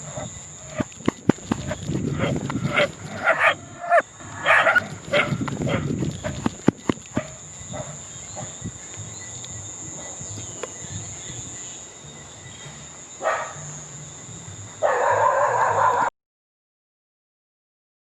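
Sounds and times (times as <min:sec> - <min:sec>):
high-pitched insect chorus: 0:00.0 - 0:16.1.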